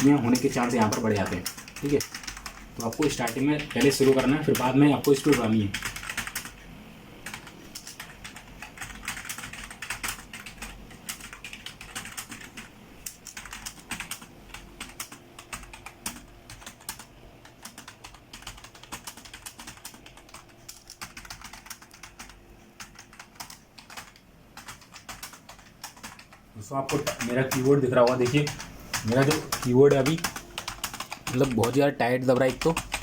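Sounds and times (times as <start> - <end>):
keyboard typing clicks: 7.2 - 33.0.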